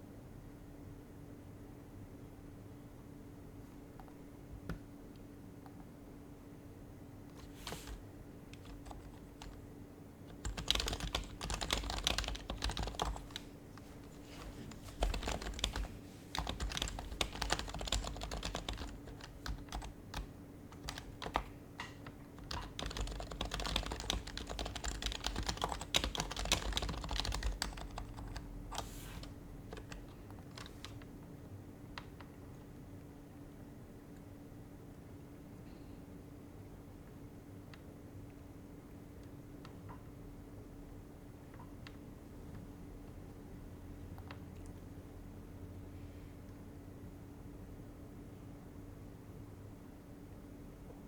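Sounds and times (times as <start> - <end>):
quiet keyboard typing: 7.3 - 31.2, 31.9 - 33.1, 41.4 - 43.4, 44.0 - 44.8.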